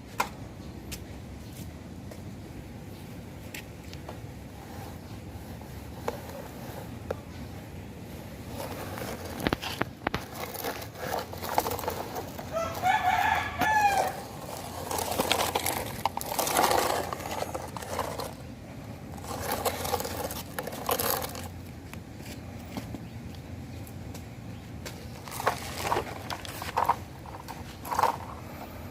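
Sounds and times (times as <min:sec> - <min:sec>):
scratchy rustling noise: 0:04.5 - 0:22.5, 0:25.0 - 0:28.9
rooster crowing: 0:12.4 - 0:14.4.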